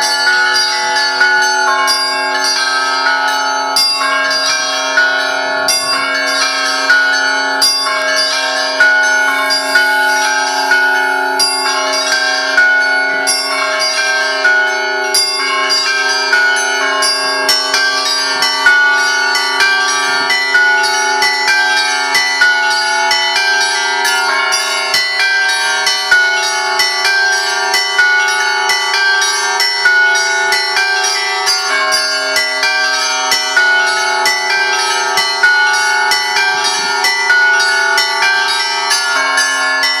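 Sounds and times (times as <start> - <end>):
hum of large bells: 0.0 - 40.0
small church bells ringing rapidly: 0.0 - 40.0.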